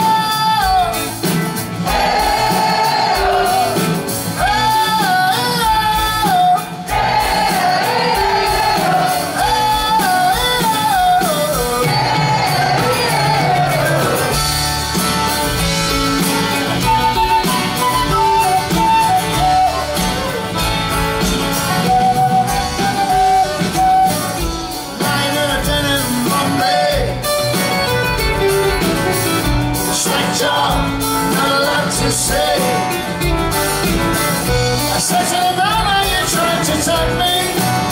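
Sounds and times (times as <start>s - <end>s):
live band playing: 0.0s - 37.9s
gliding vocal line: 11.6s - 14.4s.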